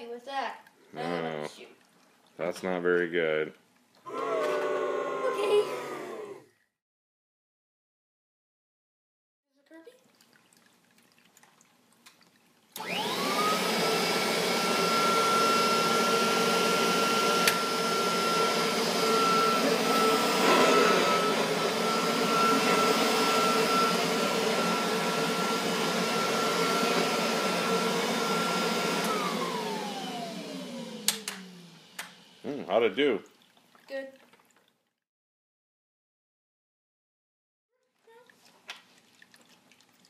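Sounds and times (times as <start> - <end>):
vacuum cleaner motor whine: 4.1 - 6.4, 12.8 - 32.5.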